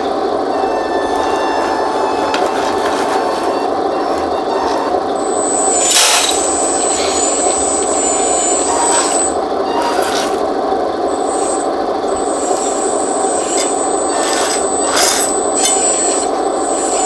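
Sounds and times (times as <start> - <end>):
electric hydraulic pump running: 0.0 - 17.0
thin high whine: 0.0 - 17.0.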